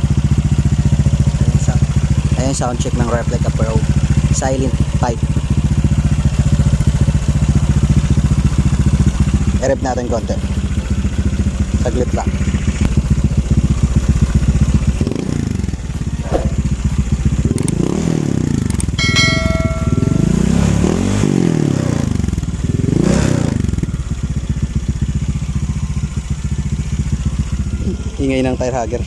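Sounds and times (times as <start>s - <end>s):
scooter engine revving and idling: 0.0s - 19.1s, 19.9s - 29.0s.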